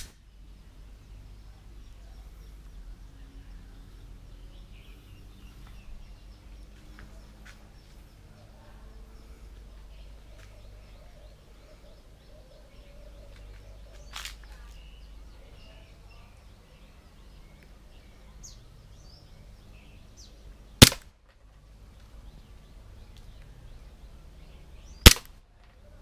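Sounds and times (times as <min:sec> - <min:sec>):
faint birdsong: 0:00.0 - 0:26.0
airsoft pistol shot: 0:20.8 - 0:21.1, 0:25.0 - 0:25.3
faint sharp snap: 0:20.8 - 0:21.1, 0:25.0 - 0:25.4.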